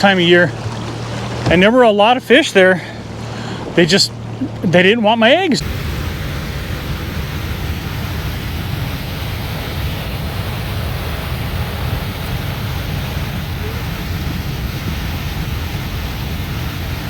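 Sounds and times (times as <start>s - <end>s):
boat engine rumble: 0.0s - 17.0s
wind noise on microphone: 5.6s - 17.0s.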